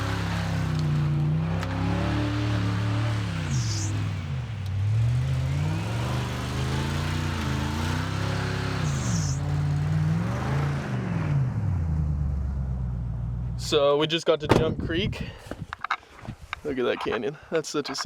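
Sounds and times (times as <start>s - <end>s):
car engine revving: 0.0s - 13.7s.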